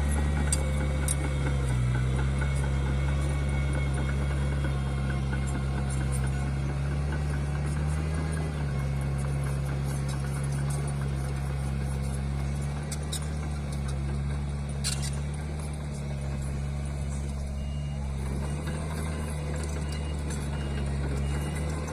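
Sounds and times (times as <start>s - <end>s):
diesel engine running: 0.0s - 21.9s.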